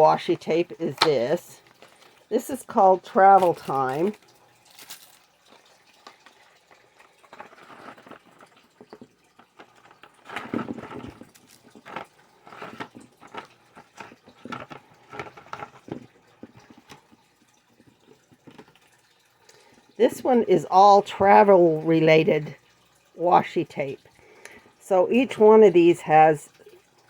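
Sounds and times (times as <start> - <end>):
plastic packaging rustling: 0.9 - 17.3.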